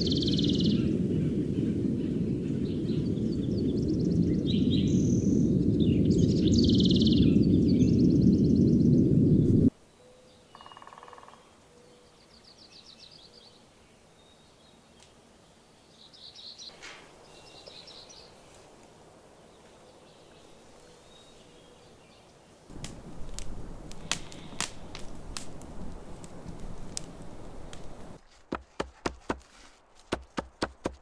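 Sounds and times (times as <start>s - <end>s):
loud low rumble: 0.0s - 9.7s
songbirds trilling: 0.0s - 18.6s.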